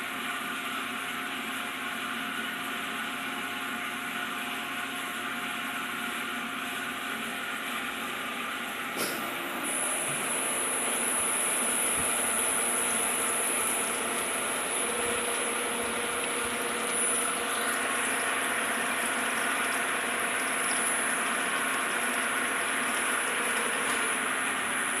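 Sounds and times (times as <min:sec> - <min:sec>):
gear hobbing machine hum: 0:06.0 - 0:25.0
thin high whine: 0:09.0 - 0:25.0.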